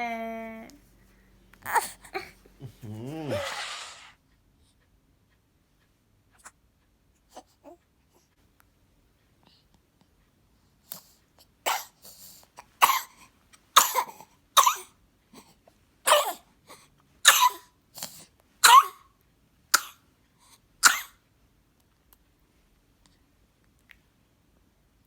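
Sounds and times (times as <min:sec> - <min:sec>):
baby coughing: 0:01.6 - 0:03.6, 0:11.7 - 0:12.0, 0:12.8 - 0:13.2, 0:13.8 - 0:14.9, 0:16.1 - 0:16.5, 0:17.2 - 0:17.7, 0:18.6 - 0:19.1, 0:19.7 - 0:20.0, 0:20.8 - 0:21.2.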